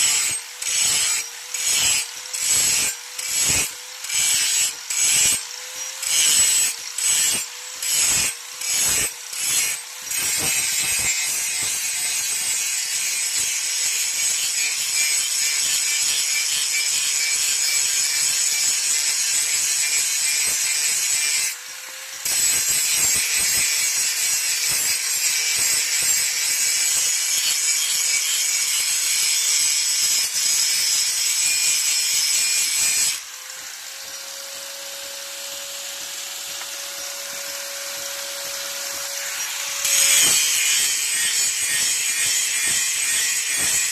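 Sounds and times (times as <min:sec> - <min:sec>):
steel blade rasping: 0:36.2 - 0:43.9.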